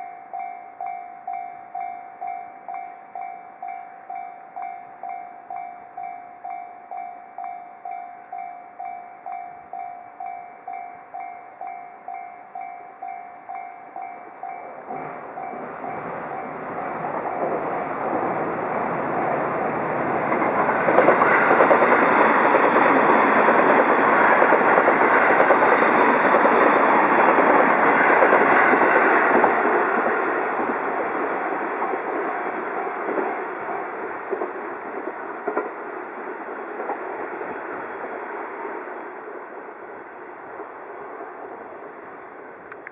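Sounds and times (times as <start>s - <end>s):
railroad crossing warning bell: 0.0s - 42.8s
train passing: 0.0s - 42.9s.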